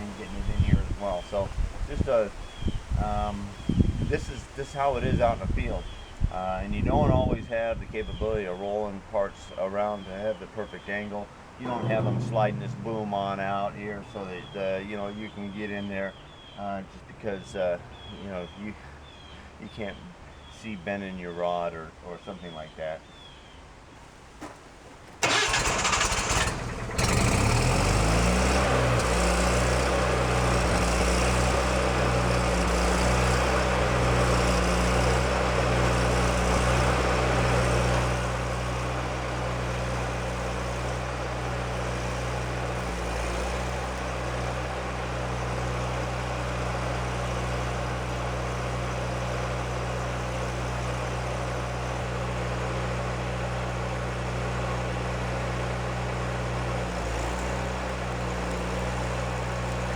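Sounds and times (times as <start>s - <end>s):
welder engine cranking and running: 25.2s - 59.9s.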